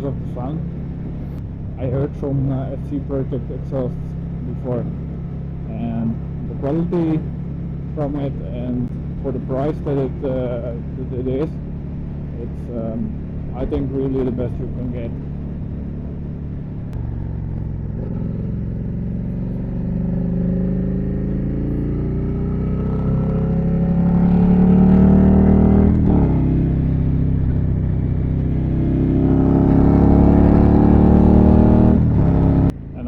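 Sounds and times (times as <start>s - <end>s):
motorcycle engine accelerating: 0.0s - 33.0s.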